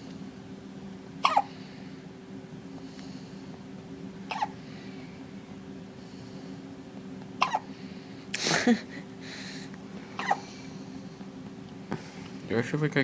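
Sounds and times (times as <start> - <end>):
baby hiccupping: 1.2 - 1.5, 4.3 - 4.6, 7.4 - 7.7, 10.2 - 10.5.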